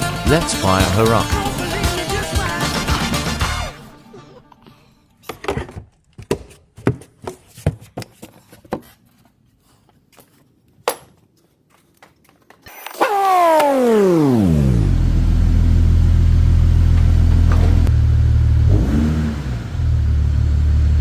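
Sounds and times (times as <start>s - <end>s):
background music: 0.0s - 5.2s.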